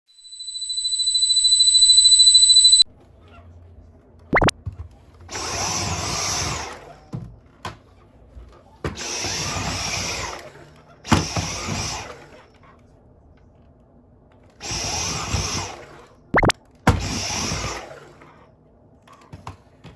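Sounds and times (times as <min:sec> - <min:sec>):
high electronic tone: 0:00.1 - 0:02.8
vacuum cleaner motor running: 0:09.0 - 0:12.4.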